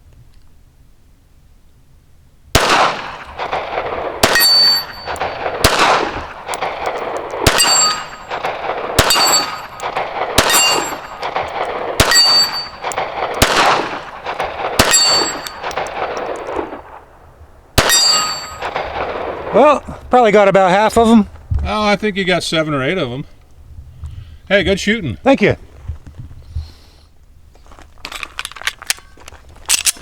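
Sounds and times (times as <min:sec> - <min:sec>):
pistol shots echoing: 0:02.6 - 0:19.6
steel plate ringing: 0:04.2 - 0:05.6, 0:06.5 - 0:13.5, 0:14.8 - 0:15.9, 0:17.8 - 0:18.8.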